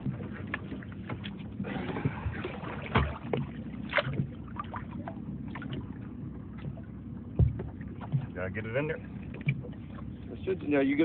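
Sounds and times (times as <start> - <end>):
boat engine idling: 0.0 - 11.0
knocks and clatter on deck: 6.6 - 8.4.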